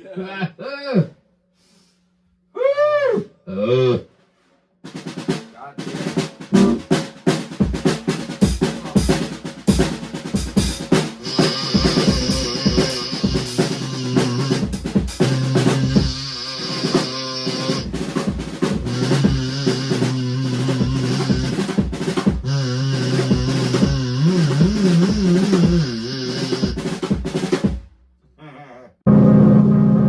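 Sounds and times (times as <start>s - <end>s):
drum kit playing: 4.9s - 28.0s.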